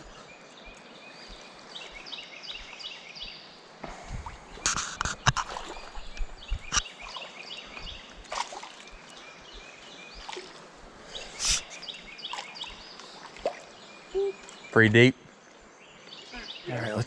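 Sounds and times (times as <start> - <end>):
water splashing around legs: 4.0 - 13.8.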